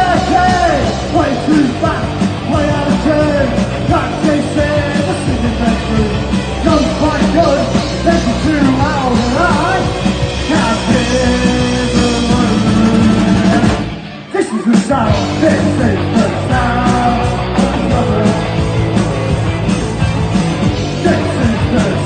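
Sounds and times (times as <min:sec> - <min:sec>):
punk rock band playing: 0:00.0 - 0:22.0.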